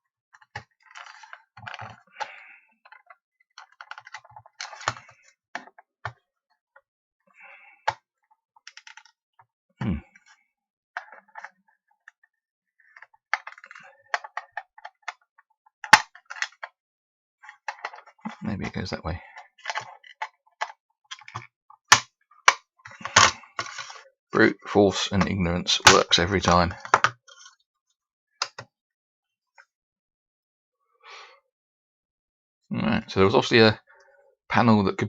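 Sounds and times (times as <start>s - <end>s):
plastic clicks and scraping: 0.4s - 6.8s, 8.6s - 9.2s, 11.0s - 16.8s, 17.4s - 24.1s, 25.2s - 27.6s, 28.4s - 28.7s.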